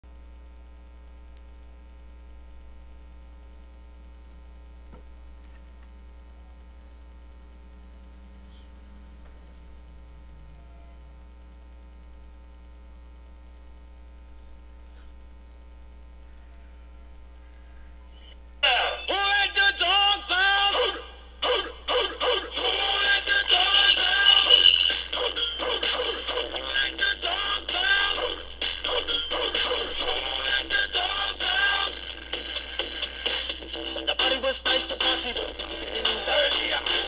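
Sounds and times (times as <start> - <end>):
electrical mains hum: 0.0 - 37.0
faint ticks: 0.5 - 0.7.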